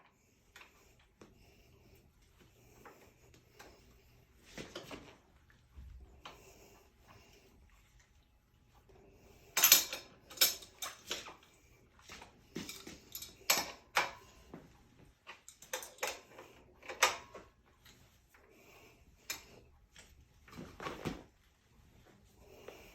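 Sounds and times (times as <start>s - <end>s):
metal tools clinking and knocking: 9.6s - 11.3s, 12.6s - 14.1s, 15.4s - 16.2s.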